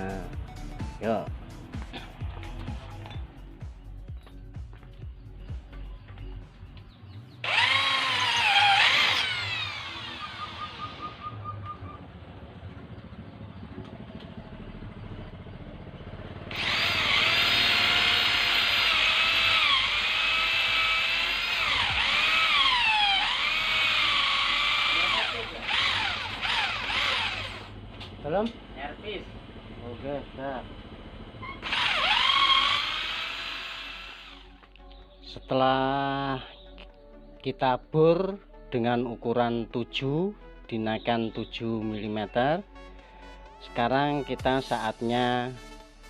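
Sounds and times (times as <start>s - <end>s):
electric drill whining: 7.4s - 11.2s, 16.5s - 27.8s, 31.5s - 34.7s.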